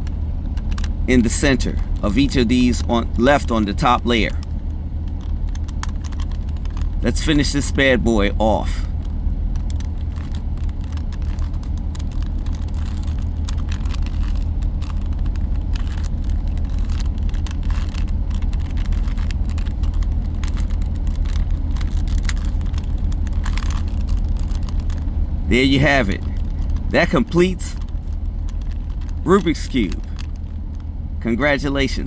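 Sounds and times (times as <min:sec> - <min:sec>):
loud steady low hum: 0:00.0 - 0:32.0
puzzle cube plastic clicks: 0:00.5 - 0:30.9.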